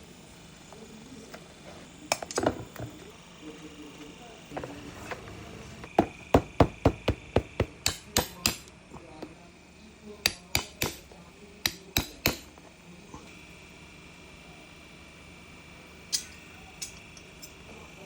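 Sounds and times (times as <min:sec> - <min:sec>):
hammer striking leather shoe: 0:05.9 - 0:08.7, 0:10.3 - 0:11.0, 0:11.6 - 0:12.5.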